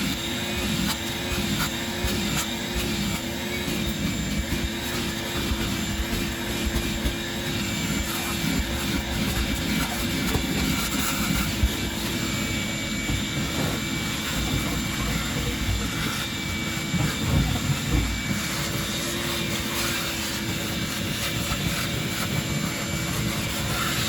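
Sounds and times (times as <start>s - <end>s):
cleaning machine droning: 0.0s - 24.0s.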